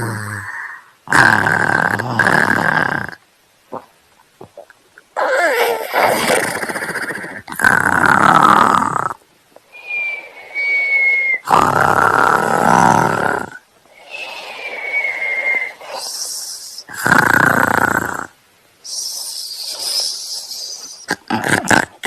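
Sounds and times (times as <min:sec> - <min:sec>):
soft breathy exhalations: 0:09.6 - 0:11.5, 0:13.8 - 0:17.0, 0:18.8 - 0:21.3.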